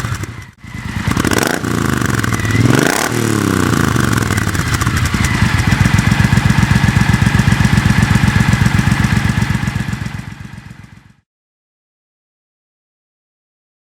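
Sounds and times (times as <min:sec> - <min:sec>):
motorcycle engine idling: 0:00.0 - 0:11.2.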